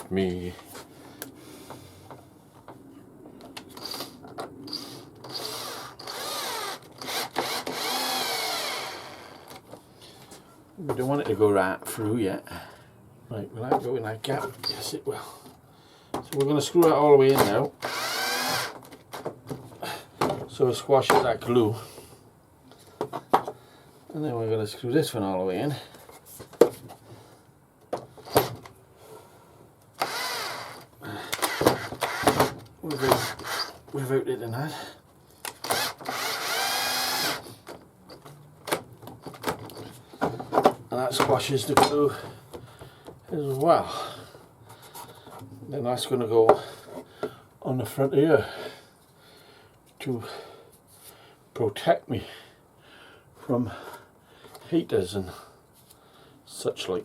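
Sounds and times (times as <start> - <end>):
power drill driving screw into wood: 4.7 - 9.5, 17.8 - 18.9, 30.0 - 33.8, 35.4 - 37.6.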